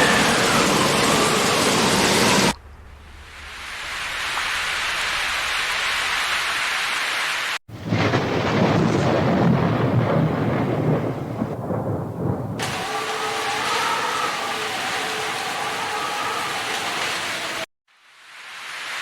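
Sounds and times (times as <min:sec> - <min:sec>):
heavy rain hiss: 0:00.0 - 0:08.2, 0:12.6 - 0:19.0
rolling thunder rumble: 0:07.7 - 0:16.4.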